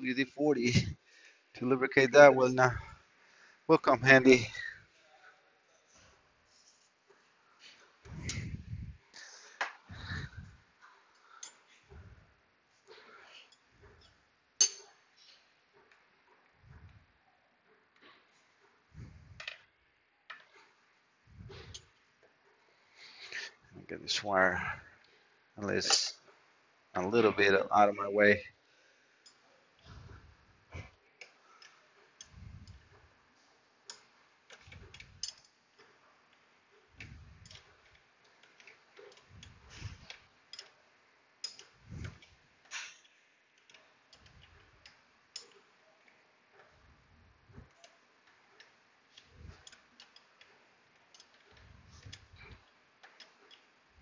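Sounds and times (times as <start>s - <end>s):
hand tools clicking and tapping: 13.5s - 15.0s, 33.8s - 36.4s, 37.0s - 40.8s, 41.4s - 46.8s, 47.6s - 53.8s.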